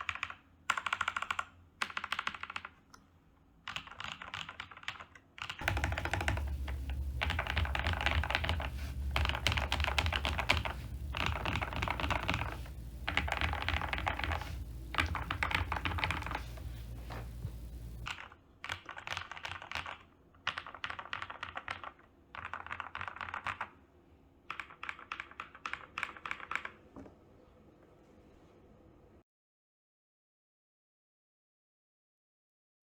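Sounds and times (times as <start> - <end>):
mechanical keyboard typing: 0.0 - 2.8, 3.7 - 23.8, 24.5 - 26.8
low hum: 5.6 - 18.1.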